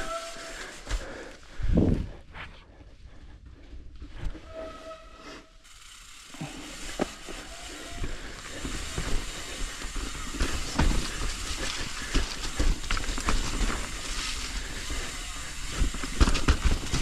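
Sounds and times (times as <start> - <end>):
bike tyre and wind hiss: 0.0 - 2.2, 3.6 - 17.0
bike knocks and rattles: 6.4 - 17.0.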